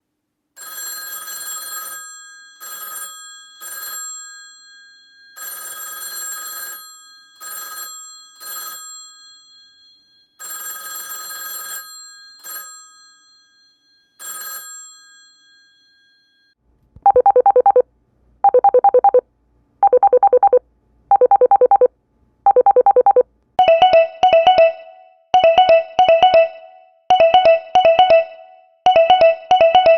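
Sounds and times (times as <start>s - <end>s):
bright metal telephone bell: 0.6s - 16.6s
high fast telephone ring: 10.4s - 16.5s, 19.8s - 21.9s.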